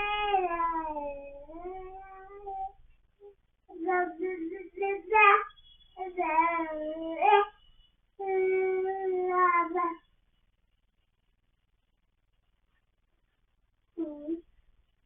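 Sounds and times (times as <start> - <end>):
baby babbling: 0.0 - 7.5, 8.2 - 10.0, 14.0 - 14.5.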